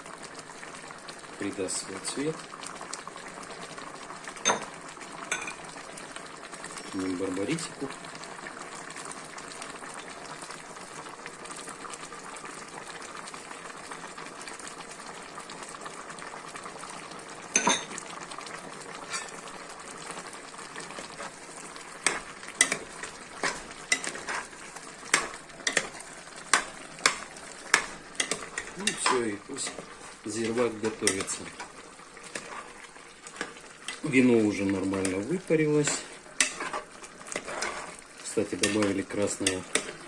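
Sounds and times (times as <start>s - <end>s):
pot bubbling and sizzling: 0.0s - 40.0s.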